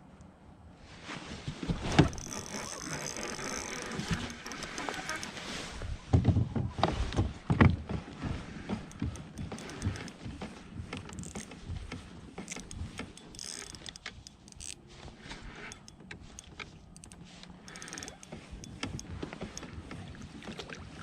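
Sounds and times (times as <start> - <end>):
buzzing whir: 1.9 - 5.4
mechanical clicking and rattling: 1.9 - 5.4, 8.7 - 14.9, 15.6 - 20.6.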